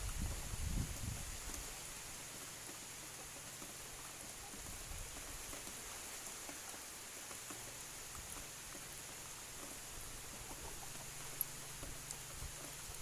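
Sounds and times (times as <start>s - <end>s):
low rumble of wind: 0.0s - 2.1s, 9.3s - 13.0s
faint ticks of raindrops: 0.0s - 13.0s
rain hissing: 0.0s - 13.0s.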